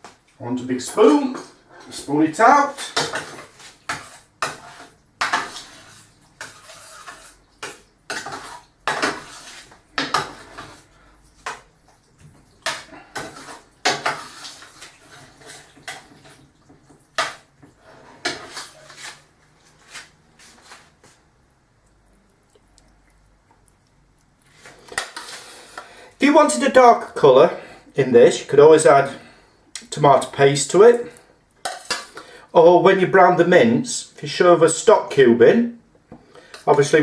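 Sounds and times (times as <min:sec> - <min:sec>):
spoon scraping a pan: 0:00.9 - 0:11.8, 0:12.4 - 0:21.2, 0:24.5 - 0:26.9, 0:30.2 - 0:32.4.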